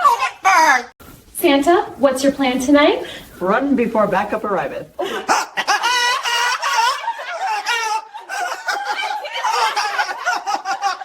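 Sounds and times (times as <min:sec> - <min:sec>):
women laughing: 0:05.0 - 0:11.0.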